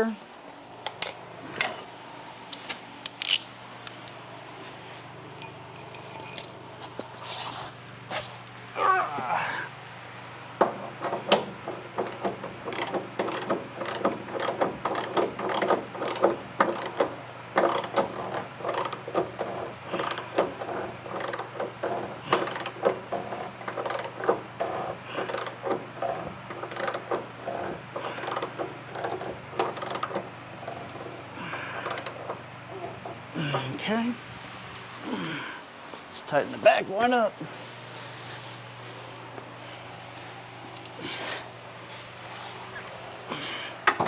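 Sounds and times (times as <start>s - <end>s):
faint steady hum: 0.0s - 44.0s
ratchet pawl clicking: 29.8s - 30.1s.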